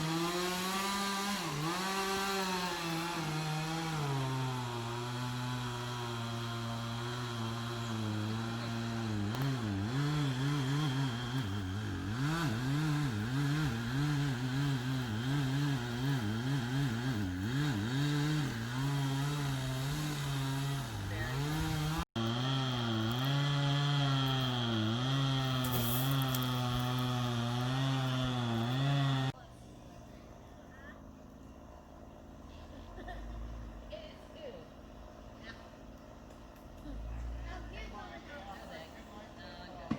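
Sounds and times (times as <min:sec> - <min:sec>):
chainsaw cutting wood: 0:00.0 - 0:29.4.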